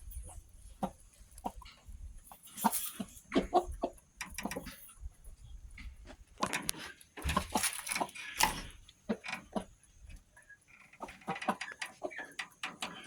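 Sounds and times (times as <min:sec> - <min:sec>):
chickens clucking: 0:00.1 - 0:13.0
knocks and rustles: 0:05.8 - 0:10.2.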